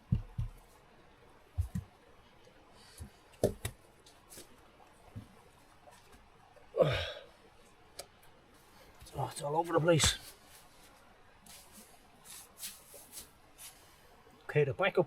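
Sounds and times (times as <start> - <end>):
wooden logs knocking: 0.0 - 0.6, 1.6 - 1.9, 3.0 - 3.8
rustling: 8.6 - 14.0.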